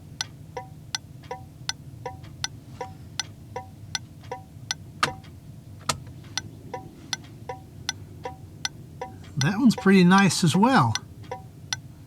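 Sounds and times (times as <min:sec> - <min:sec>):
turn signal relay clicking: 0:00.0 - 0:11.9.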